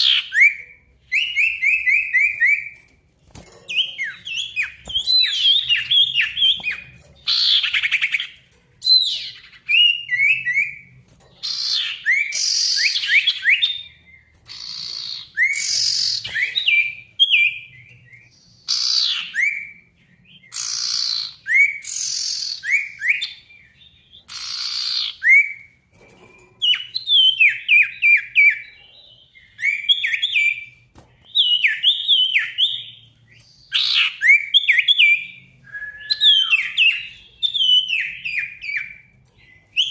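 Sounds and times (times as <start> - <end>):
songbird whistles and chirps: 0.0 - 2.8, 11.4 - 25.7, 26.7 - 39.9.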